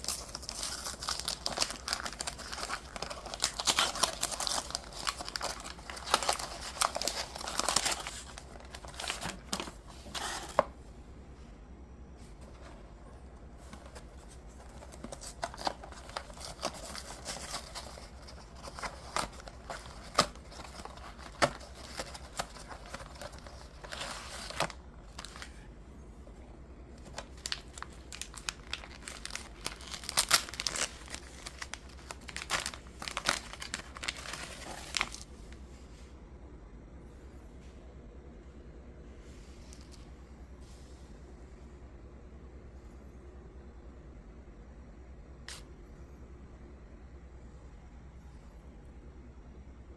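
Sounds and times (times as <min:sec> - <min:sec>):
plastic packaging crinkling and tearing: 0:00.0 - 0:10.7, 0:13.6 - 0:25.6, 0:27.0 - 0:35.3.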